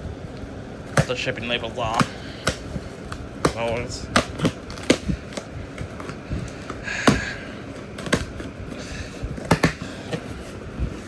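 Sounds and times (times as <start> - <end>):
taps and clicks on cardboard box: 8.0 - 8.5, 9.4 - 10.2.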